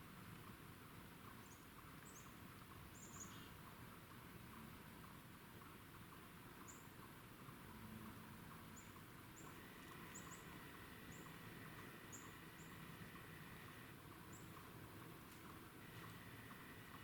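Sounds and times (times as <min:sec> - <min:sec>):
faint steady high tone: 0:08.8 - 0:14.5.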